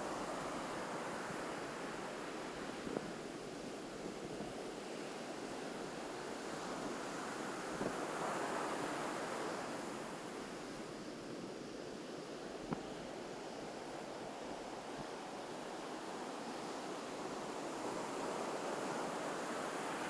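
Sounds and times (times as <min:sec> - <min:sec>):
ocean surf washing onto beach: 0:00.0 - 0:20.0.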